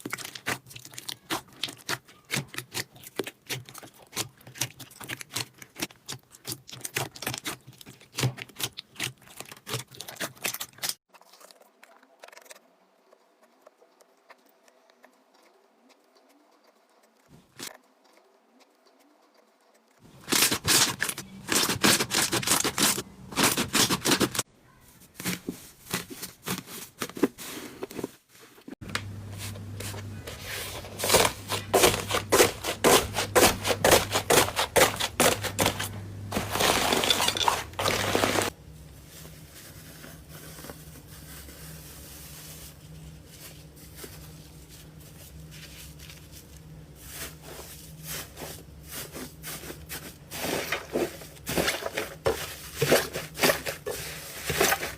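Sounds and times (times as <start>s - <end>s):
slime clicking and crackling: 0.0s - 16.0s.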